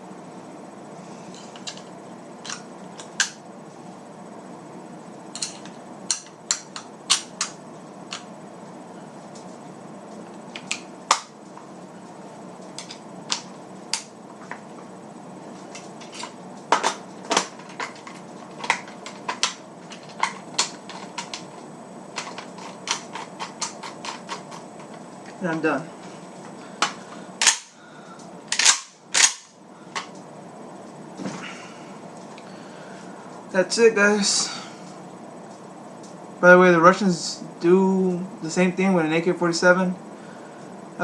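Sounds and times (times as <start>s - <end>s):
steady background hum: 0.0s - 41.0s
gun parts clicking and clacking: 27.4s - 27.7s, 28.5s - 29.5s.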